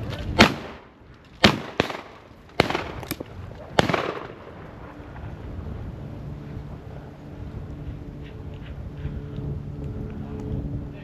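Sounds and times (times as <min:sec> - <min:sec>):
wind noise: 0:00.0 - 0:11.0
shotgun shots echoing: 0:00.4 - 0:03.2, 0:03.8 - 0:04.5.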